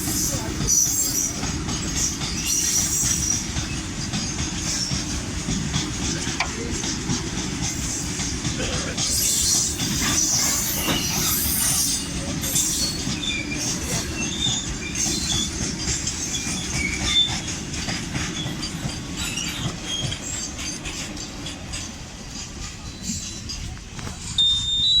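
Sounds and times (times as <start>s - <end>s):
train wheels rumbling on rails: 0.0s - 25.0s
high-pitched wheel squeals: 9.1s - 15.6s, 24.4s - 25.0s.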